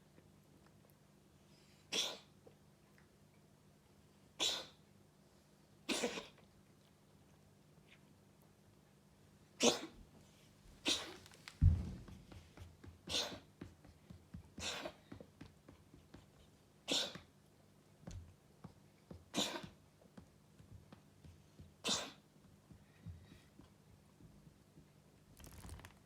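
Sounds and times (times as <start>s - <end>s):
cat sneezing: 1.9s - 2.4s, 4.4s - 4.8s, 5.9s - 6.4s, 9.6s - 10.0s, 10.8s - 11.2s, 13.1s - 13.4s, 14.6s - 15.0s, 16.9s - 17.3s, 19.3s - 19.7s, 21.8s - 22.2s
dull thump: 11.5s - 12.5s.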